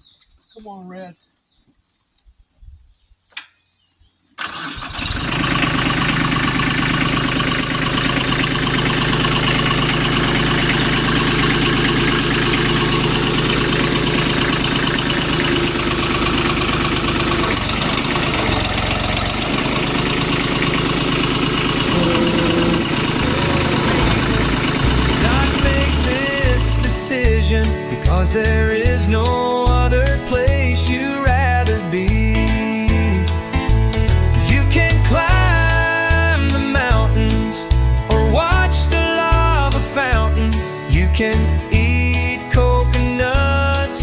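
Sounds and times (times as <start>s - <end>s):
short clicks: 3.3s - 3.6s
diesel engine starting and running: 4.4s - 44.0s.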